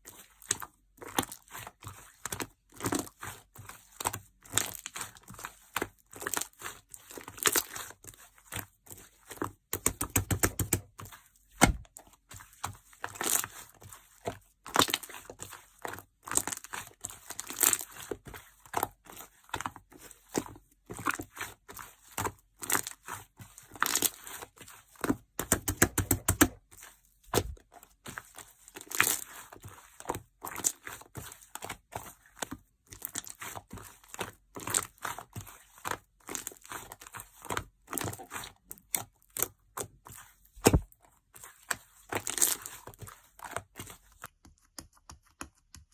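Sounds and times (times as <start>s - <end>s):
slime crackling and popping: 42.1s - 42.7s.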